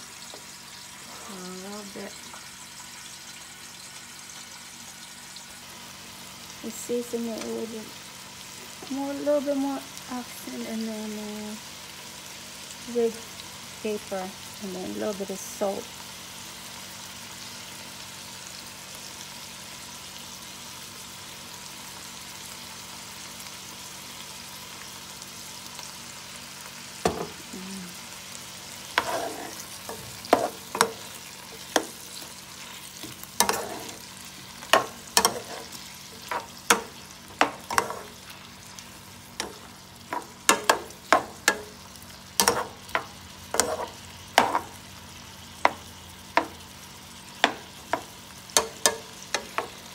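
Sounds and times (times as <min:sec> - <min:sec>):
food sizzling in a frying pan: 0:00.0 - 0:49.9
utensil scraping a pan: 0:28.9 - 0:38.3, 0:42.4 - 0:44.8.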